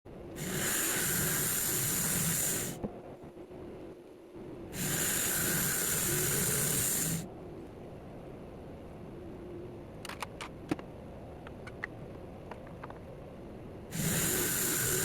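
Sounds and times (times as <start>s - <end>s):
high hissing bursts: 0.4s - 2.8s, 4.8s - 7.2s, 13.9s - 15.0s.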